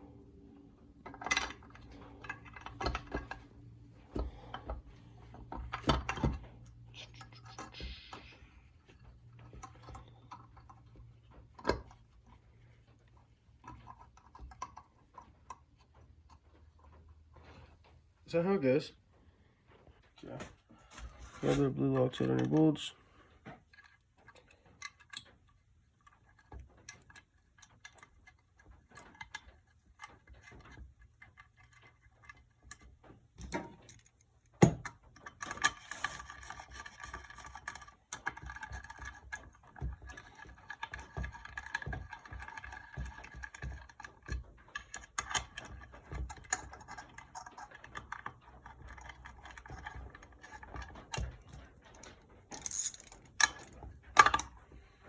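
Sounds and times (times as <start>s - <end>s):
metal bolts and tools clinking: 1.0s - 4.8s, 23.7s - 54.8s.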